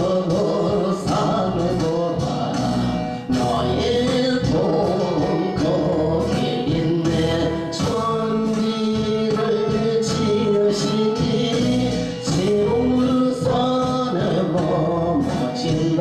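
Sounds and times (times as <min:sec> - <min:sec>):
gospel singing: 0:00.0 - 0:16.0
instrumental accompaniment: 0:00.0 - 0:16.0.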